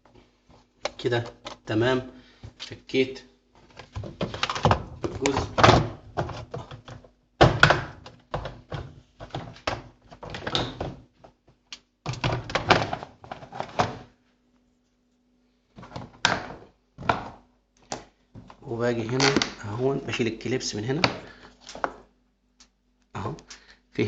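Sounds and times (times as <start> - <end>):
plastic panels knocking and clunking: 3.6 - 14.1, 15.8 - 19.6, 20.9 - 22.1.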